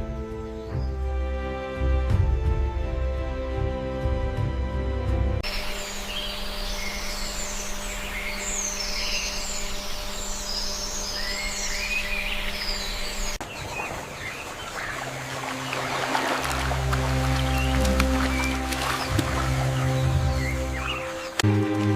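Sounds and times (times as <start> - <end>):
birds chirping and warbling: 5.4 - 21.4
forest ambience hiss: 5.4 - 21.4.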